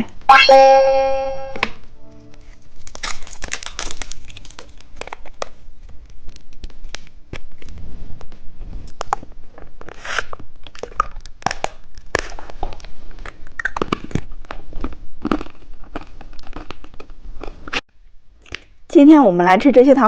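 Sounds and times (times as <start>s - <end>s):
plastic packaging crinkling: 2.6s - 7.7s.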